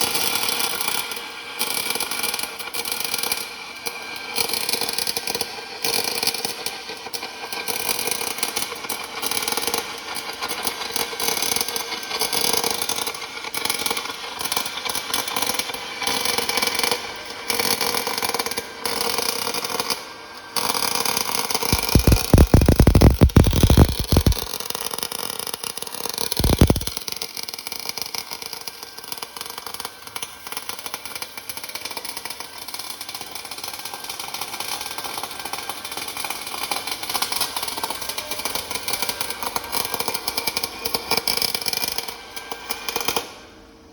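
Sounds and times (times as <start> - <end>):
machine whirring: 20.8 - 24.7, 26.2 - 27.1.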